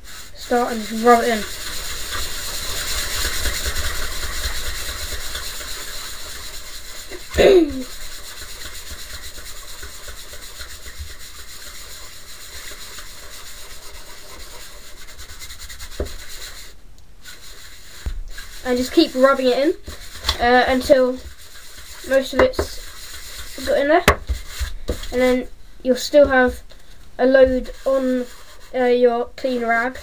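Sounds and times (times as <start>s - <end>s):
cloth rag rubbing wood: 0.0s - 26.6s, 27.3s - 30.0s.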